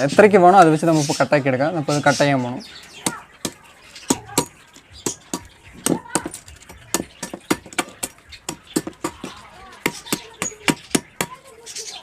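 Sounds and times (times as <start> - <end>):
blade chopping wood: 3.0 - 11.4.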